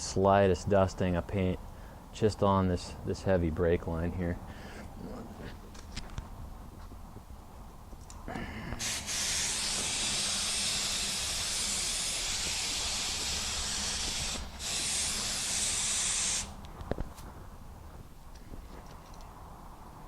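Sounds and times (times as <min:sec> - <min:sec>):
spray gun hissing: 0:08.8 - 0:16.6.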